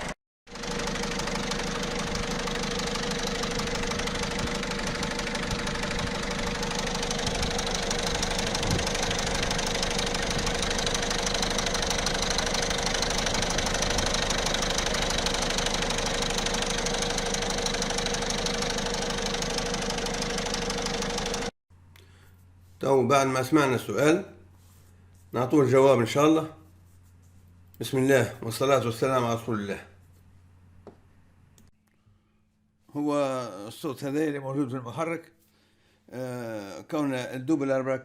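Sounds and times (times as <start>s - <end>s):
diesel engine idling: 0.5s - 21.5s.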